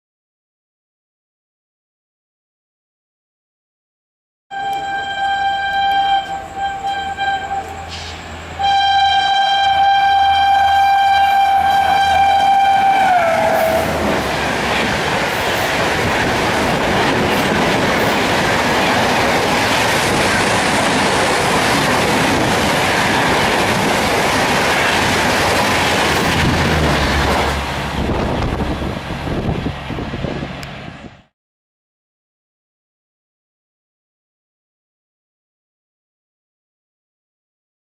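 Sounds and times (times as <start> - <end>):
locomotive horn blasts: 4.5 - 14.2
train coaches rushing past: 4.6 - 31.2.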